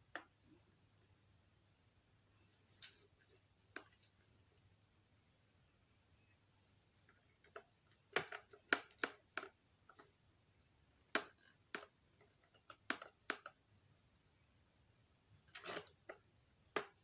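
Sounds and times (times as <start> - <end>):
hand tools clicking and tapping: 7.3 - 10.0.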